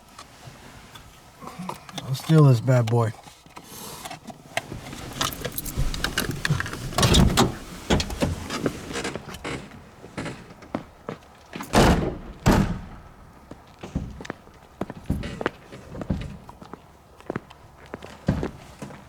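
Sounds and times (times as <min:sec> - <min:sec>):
rustling: 0:04.5 - 0:09.8
car door opening and shutting: 0:04.6 - 0:10.8, 0:11.6 - 0:14.4
heavy thuds: 0:11.7 - 0:16.4.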